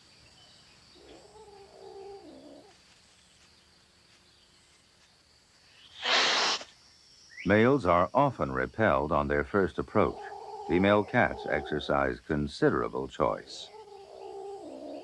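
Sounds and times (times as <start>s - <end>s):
insects chirring: 0.0s - 15.0s
cat hissing: 6.0s - 6.7s.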